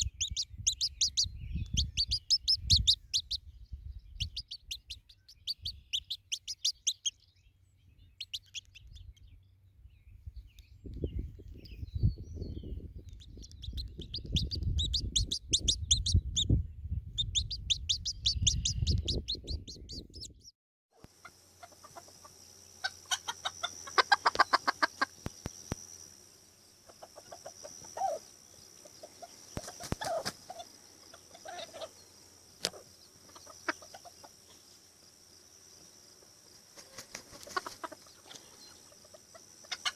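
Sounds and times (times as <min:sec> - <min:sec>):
chickens clucking: 0:00.0 - 0:03.4, 0:04.2 - 0:07.1, 0:13.2 - 0:16.4, 0:17.2 - 0:20.3, 0:21.2 - 0:25.1, 0:26.8 - 0:28.2, 0:28.8 - 0:32.0, 0:32.7 - 0:34.4, 0:36.9 - 0:39.9
chicks peeping: 0:00.0 - 0:09.4, 0:10.5 - 0:20.5.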